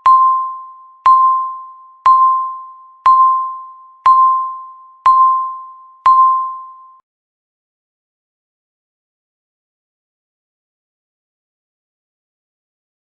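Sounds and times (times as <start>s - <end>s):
electronic countdown beep: 0.0s - 7.0s.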